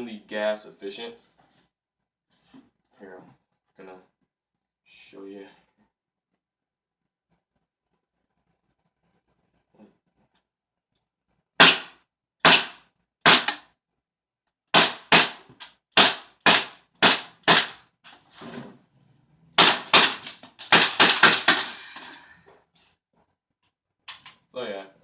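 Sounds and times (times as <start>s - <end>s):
airsoft pistol shots: 11.6s - 13.6s, 14.8s - 15.4s, 16.0s - 17.8s, 19.6s - 22.0s.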